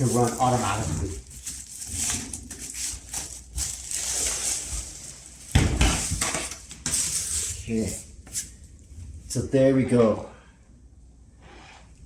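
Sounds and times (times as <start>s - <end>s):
plastic wrapping rustling: 0.0s - 8.5s.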